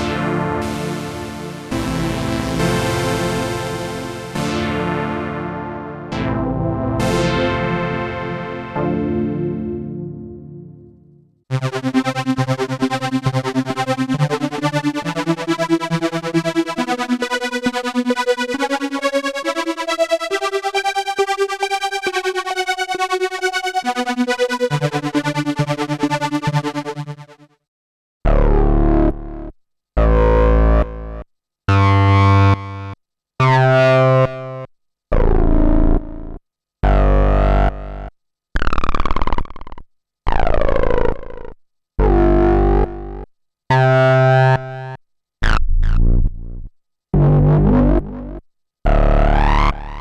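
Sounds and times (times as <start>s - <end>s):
synthesizer pulsing repeated notes: 0.0s - 27.4s, 47.2s - 50.0s.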